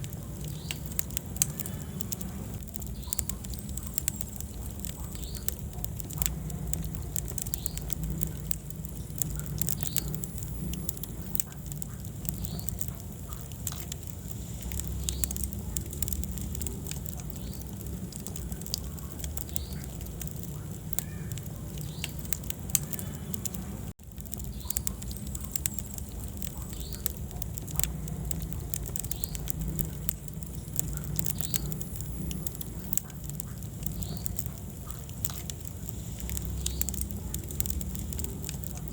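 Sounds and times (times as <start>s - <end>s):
fire crackling and popping: 0.0s - 38.9s
low rumble of flames: 0.0s - 38.9s.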